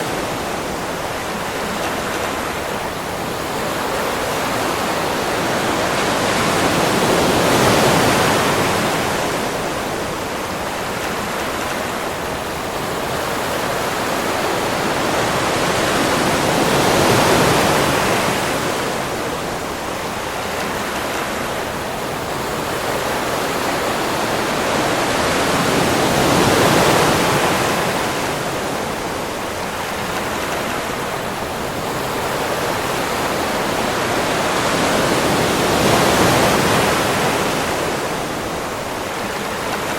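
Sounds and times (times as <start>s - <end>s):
ocean waves breaking on beach: 0.0s - 39.9s.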